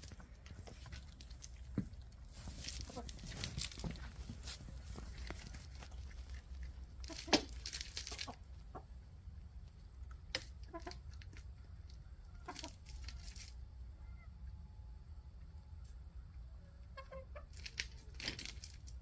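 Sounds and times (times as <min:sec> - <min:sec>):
rustling: 0:00.0 - 0:08.8, 0:10.3 - 0:13.6, 0:17.4 - 0:19.0
hens clucking: 0:02.6 - 0:13.2, 0:16.3 - 0:17.7.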